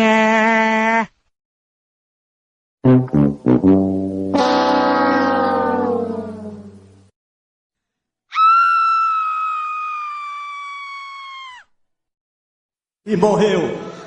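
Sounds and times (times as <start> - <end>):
long high-pitched scream: 8.3 - 11.8.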